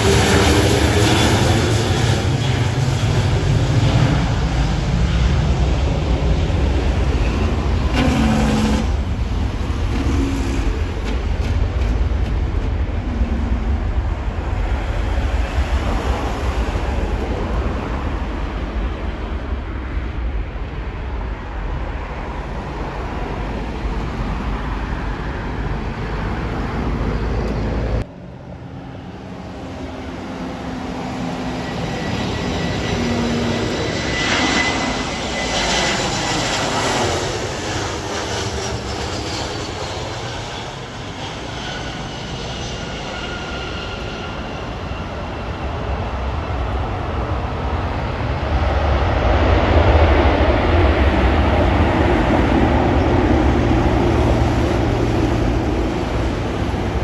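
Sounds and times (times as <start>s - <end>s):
steady low rumble: 0.0s - 28.1s
airplane flying past: 0.0s - 57.0s.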